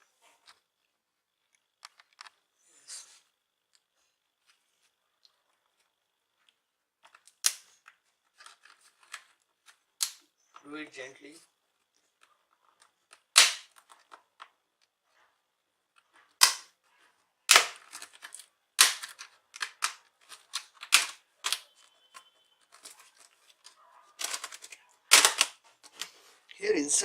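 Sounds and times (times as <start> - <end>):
plastic clips popping loose: 13.1 - 14.5, 16.4 - 16.7, 17.5 - 21.7, 24.2 - 26.1.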